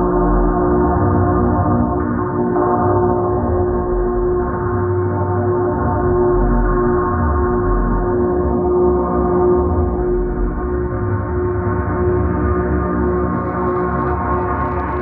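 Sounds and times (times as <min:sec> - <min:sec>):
ambient drone chord: 0:09.4 - 0:15.0.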